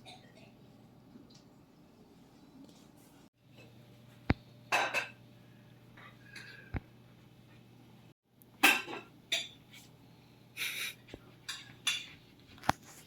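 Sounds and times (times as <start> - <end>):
dishes and cutlery clinking: 4.7 - 5.2, 8.6 - 9.8, 11.4 - 12.8.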